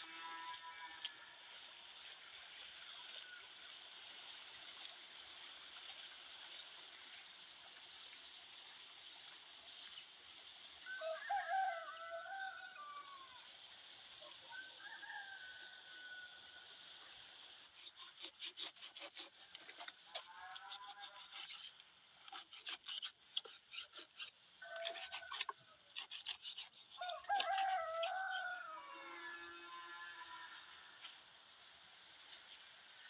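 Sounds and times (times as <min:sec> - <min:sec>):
rooster crowing: 0:10.8 - 0:13.4, 0:14.5 - 0:16.7, 0:24.6 - 0:25.6, 0:27.0 - 0:30.7
faint steady high hiss: 0:30.6 - 0:33.0.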